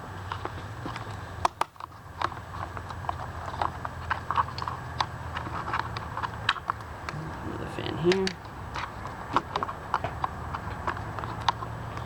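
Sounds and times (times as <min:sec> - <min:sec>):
plastic and metal parts clicking: 0:08.0 - 0:12.0.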